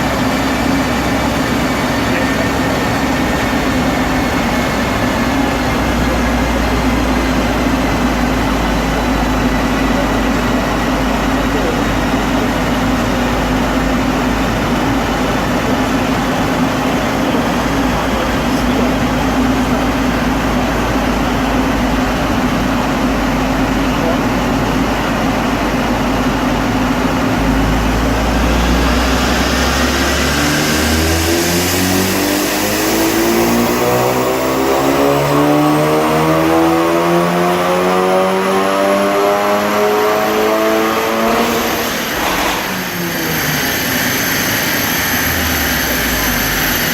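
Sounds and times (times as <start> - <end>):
car engine under load: 0.0 - 46.9
turbo whistle rising: 27.4 - 36.8.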